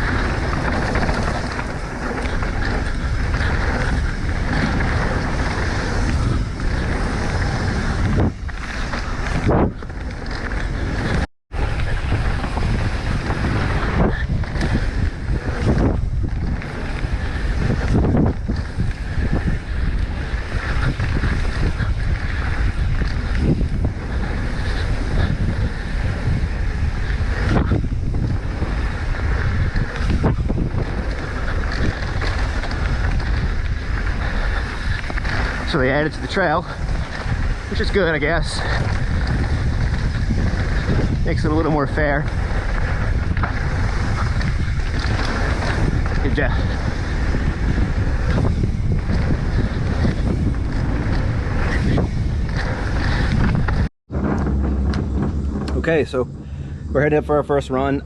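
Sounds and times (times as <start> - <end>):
bike tyre and trail noise: 0.0 - 58.0
wind rushing over microphone: 0.0 - 58.0.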